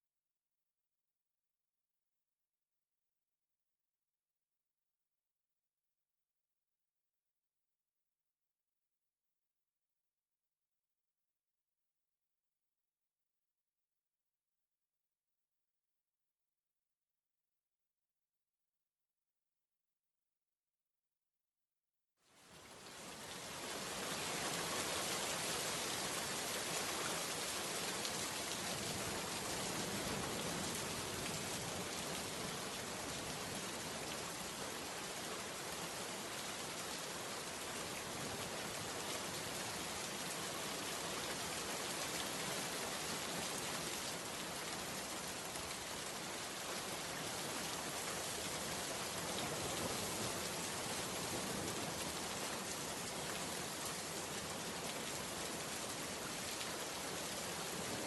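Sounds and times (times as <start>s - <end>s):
steady rain: 22.3s - 58.0s.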